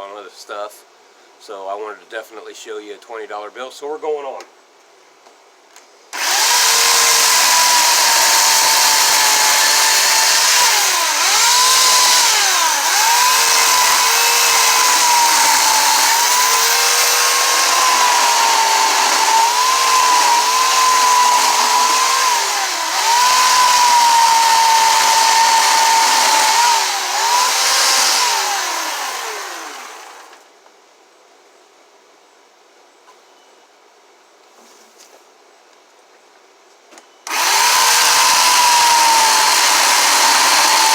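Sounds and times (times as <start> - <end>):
chainsaw cutting log: 6.2 - 30.4, 37.3 - 40.9.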